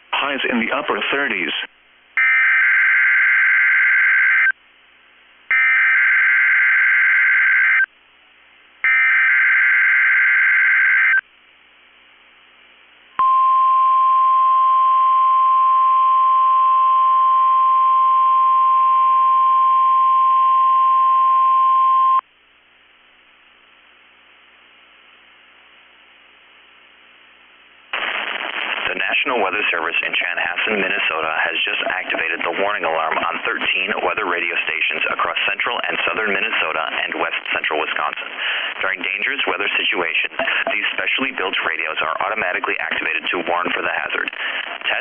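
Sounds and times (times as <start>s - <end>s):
steady warning alarm tone: 2.2s - 4.5s, 5.5s - 7.9s, 8.9s - 11.2s.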